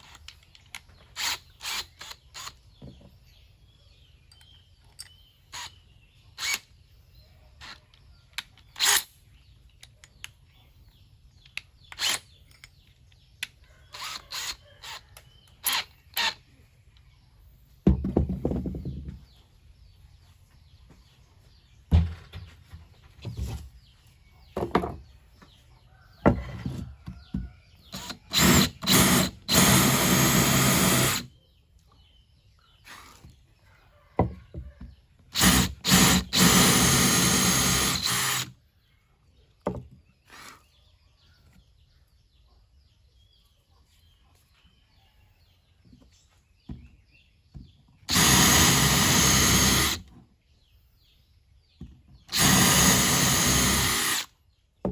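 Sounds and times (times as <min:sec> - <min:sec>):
cordless drill motor: 0:01.0 - 0:02.8, 0:06.4 - 0:06.7, 0:11.9 - 0:12.2, 0:13.9 - 0:16.4, 0:27.9 - 0:31.3, 0:35.3 - 0:38.6, 0:48.1 - 0:50.1, 0:52.3 - 0:54.3.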